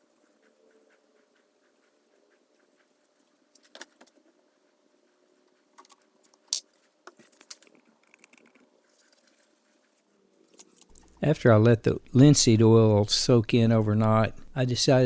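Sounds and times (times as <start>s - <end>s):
small objects clicking and tapping: 5.8s - 8.7s
faint steady hum: 8.4s - 15.0s.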